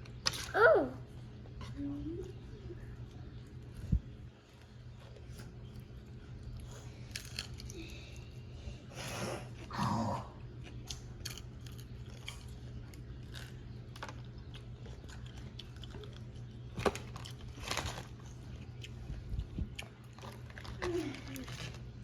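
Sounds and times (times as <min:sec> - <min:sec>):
steady low hum: 0:00.0 - 0:22.0
crunching fried chicken: 0:03.2 - 0:08.2, 0:09.5 - 0:22.0.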